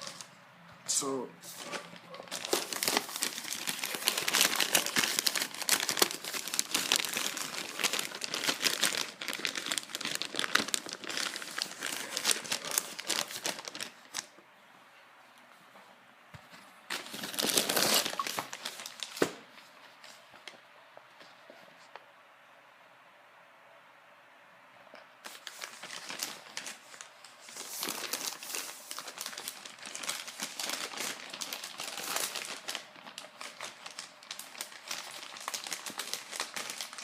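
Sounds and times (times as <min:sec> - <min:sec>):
plastic wrapping film crinkling: 0:00.0 - 0:00.3, 0:01.4 - 0:14.4, 0:16.9 - 0:20.7, 0:25.2 - 0:37.0.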